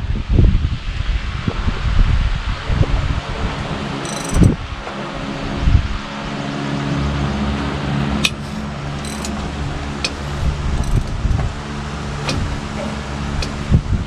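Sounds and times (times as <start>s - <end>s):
ratchet clicking on bolts: 4.0s - 4.5s, 8.2s - 13.7s.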